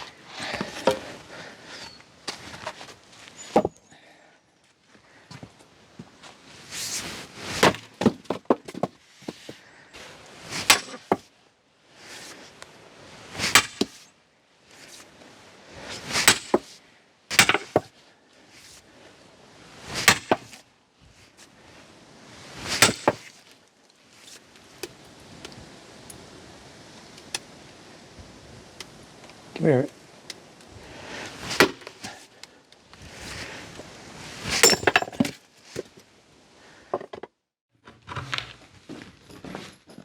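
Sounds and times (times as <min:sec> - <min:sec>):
axe chopping firewood: 0:03.5 - 0:03.8, 0:07.5 - 0:09.4, 0:10.6 - 0:11.3, 0:13.4 - 0:14.0, 0:16.1 - 0:17.9, 0:20.0 - 0:20.6, 0:22.7 - 0:23.4, 0:31.5 - 0:32.2, 0:34.5 - 0:35.4.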